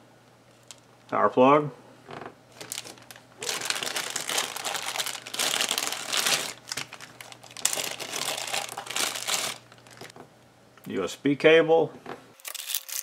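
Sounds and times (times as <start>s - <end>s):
plastic packaging crinkling: 2.5s - 10.2s, 12.4s - 13.0s.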